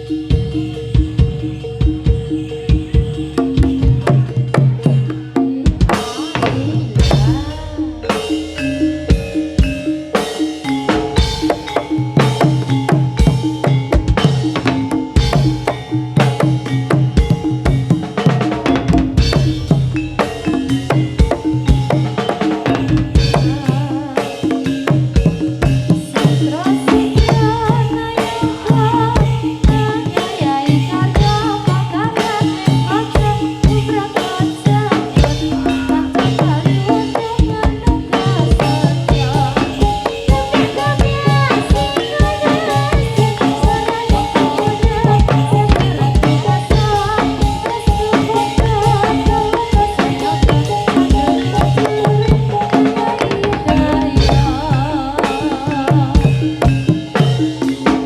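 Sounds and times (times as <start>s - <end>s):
hand drums beating fast rhythm: 0.0s - 58.0s
melodic instruments: 0.0s - 58.0s
steady bass: 19.0s - 22.0s.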